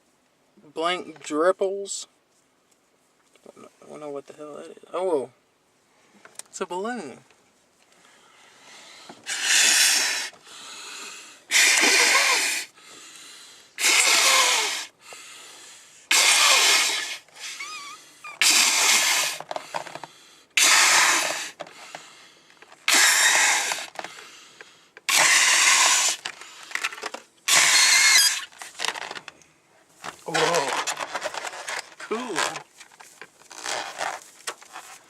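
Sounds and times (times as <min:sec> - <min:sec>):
breaths blowing up balloon: 0:08.7 - 0:29.2.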